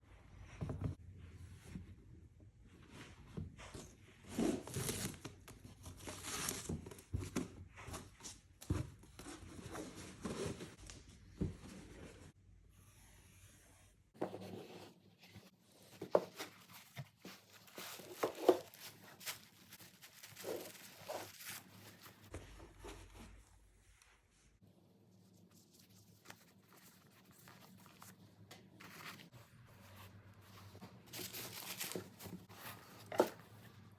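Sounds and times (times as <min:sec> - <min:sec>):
paper rustling and tearing: 0:16.4 - 0:22.3, 0:31.1 - 0:33.4.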